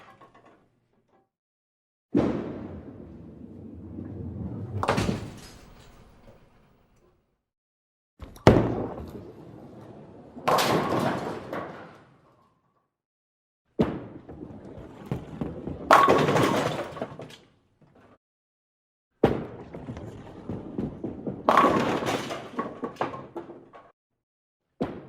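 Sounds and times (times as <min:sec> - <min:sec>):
bowling pins crashing: 0:02.2 - 0:06.3, 0:13.8 - 0:17.3, 0:19.3 - 0:23.8
bowling ball rolling: 0:02.5 - 0:05.3.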